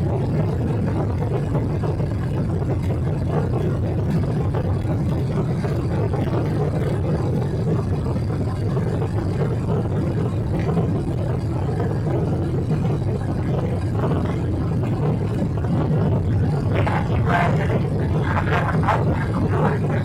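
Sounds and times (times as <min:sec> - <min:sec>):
airliner cabin rumble: 0:00.0 - 0:20.0.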